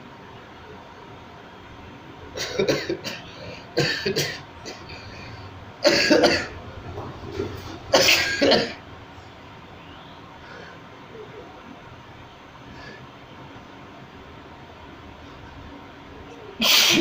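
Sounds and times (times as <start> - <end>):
man sneezing: 16.6 - 17.0.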